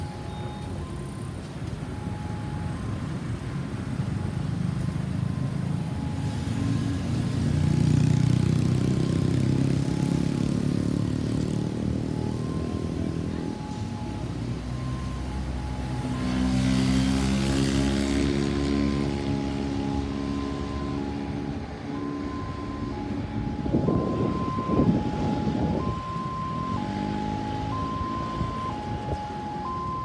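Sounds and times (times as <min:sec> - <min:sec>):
faint two-tone siren: 0:00.0 - 0:30.0
vehicle passing in traffic: 0:00.0 - 0:30.0
even-pitched engine hum: 0:09.3 - 0:30.0.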